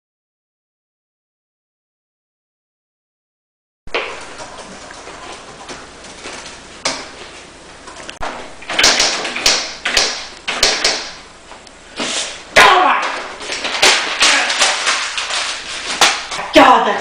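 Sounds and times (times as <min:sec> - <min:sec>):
typewriter keys clacking: 0:08.7 - 0:11.1.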